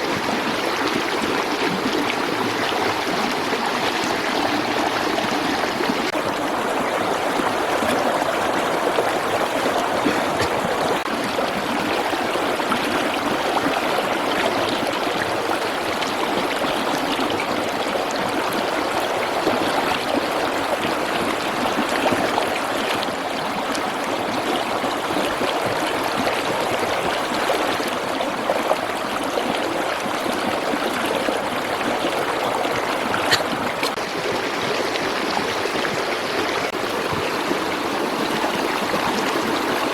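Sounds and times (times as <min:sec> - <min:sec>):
running water rushing: 0:00.0 - 0:39.9.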